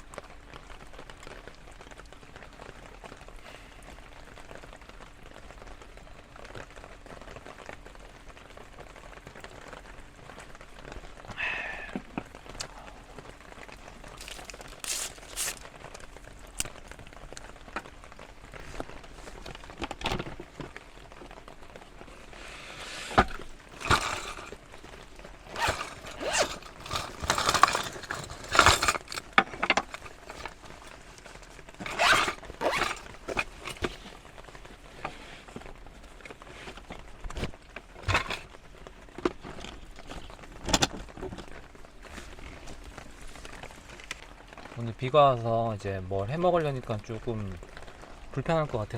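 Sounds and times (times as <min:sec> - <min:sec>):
rustling and crinkling of handled things: 0:00.0 - 0:48.9
rain hissing: 0:20.8 - 0:23.8.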